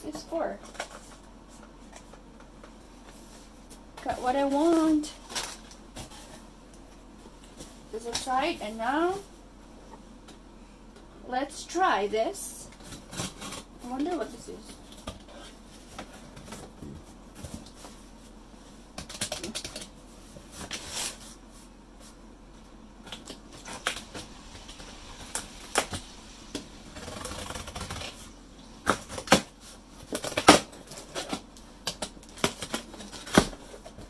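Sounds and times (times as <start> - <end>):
packaging rustling: 4.4 - 6.5.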